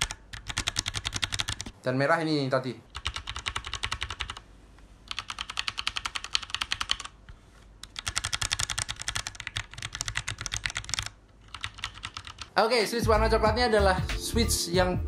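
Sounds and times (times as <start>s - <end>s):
mechanical keyboard typing: 0.0s - 1.8s, 2.9s - 4.4s, 5.1s - 7.2s, 7.8s - 12.5s.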